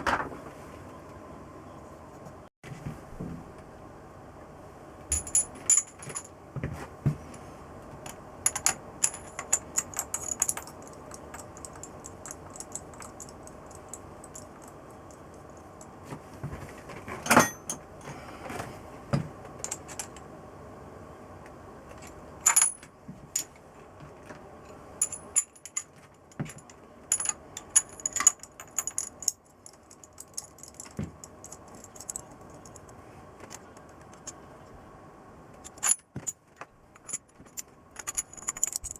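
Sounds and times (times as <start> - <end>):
faint steady hum: 0.0 - 38.9
metal tools clinking: 8.5 - 16.0, 17.1 - 17.9, 24.7 - 34.4, 35.6 - 38.9.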